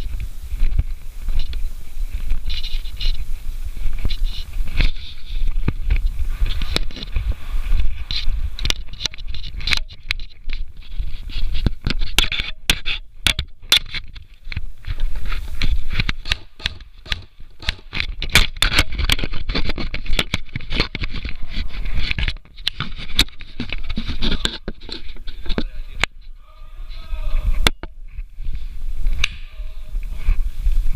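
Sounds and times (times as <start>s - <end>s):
gear scraping and rustling: 0.0s - 13.1s, 13.8s - 26.4s
sharp irregular clicks: 16.1s - 19.2s.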